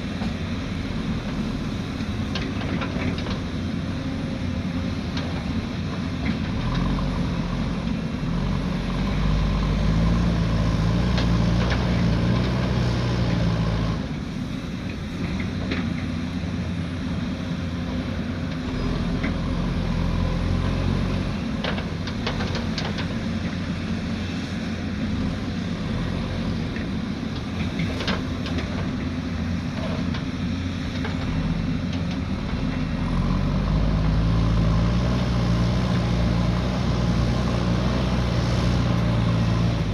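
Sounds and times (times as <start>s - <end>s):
earthmoving machine diesel engine: 0.0s - 39.9s.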